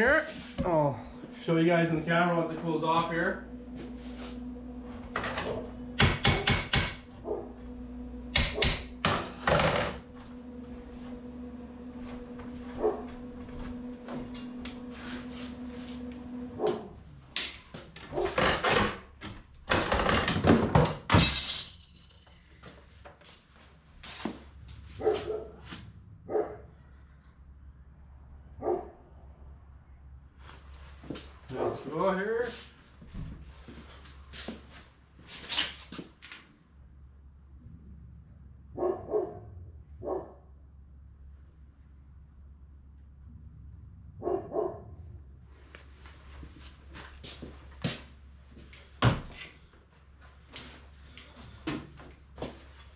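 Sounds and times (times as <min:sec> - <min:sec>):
steady hum: 0:00.0 - 0:18.1
metal knocks and thunks: 0:05.2 - 0:07.1.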